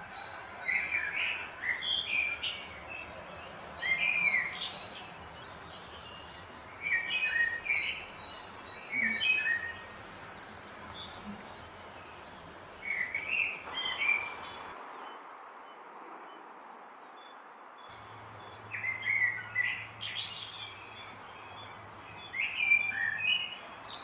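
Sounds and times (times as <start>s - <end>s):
songbirds chirping: 0.0s - 24.0s.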